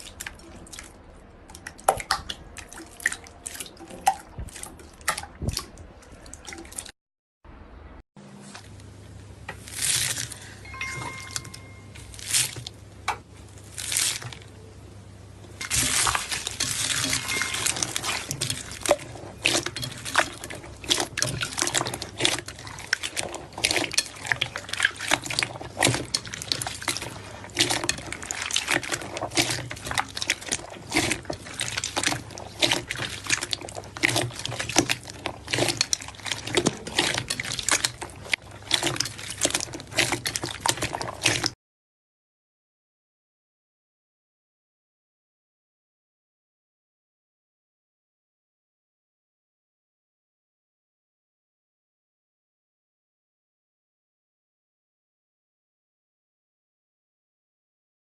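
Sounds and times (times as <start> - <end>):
slime squelching: 0.0 - 6.9, 8.4 - 14.7, 15.5 - 41.6.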